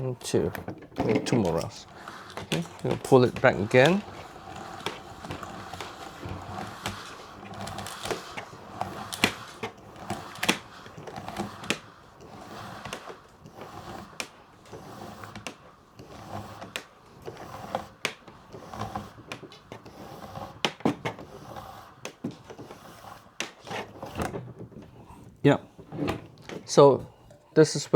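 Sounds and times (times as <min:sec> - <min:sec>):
cable pulled out and wound: 0:00.0 - 0:27.0
reel clicking and knocking: 0:00.0 - 0:27.9.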